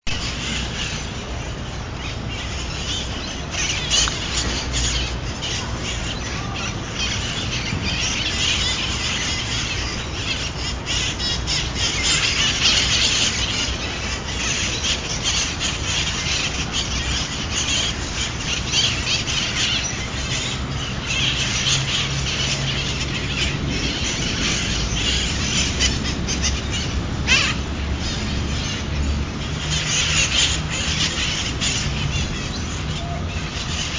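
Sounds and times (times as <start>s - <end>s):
parrots squawking: 0.1s - 33.9s
steady low rumble: 0.1s - 33.9s.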